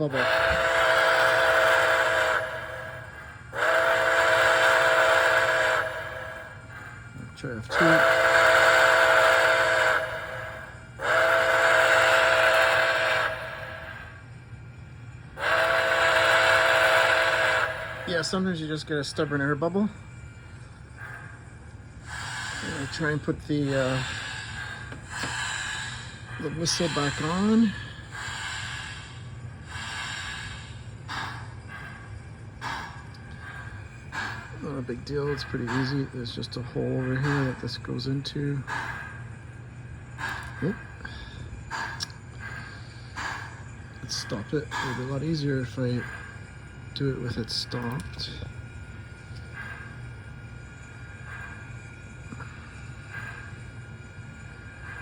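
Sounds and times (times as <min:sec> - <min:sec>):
chime steam whistle: 0:00.0 - 0:14.3, 0:15.4 - 0:21.4, 0:22.0 - 0:28.7
steam hiss: 0:00.0 - 0:14.3, 0:15.4 - 0:19.9, 0:22.0 - 0:39.3, 0:40.1 - 0:48.4, 0:49.4 - 0:55.0
steady low hum: 0:00.0 - 0:55.0.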